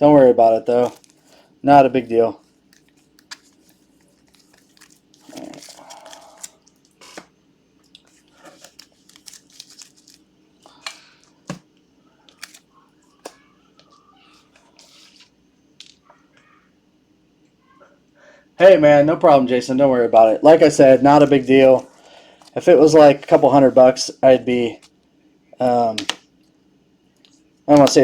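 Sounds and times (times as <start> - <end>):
plastic rustling: 0.5 - 11.6
trading cards being handled: 0.6 - 16.2.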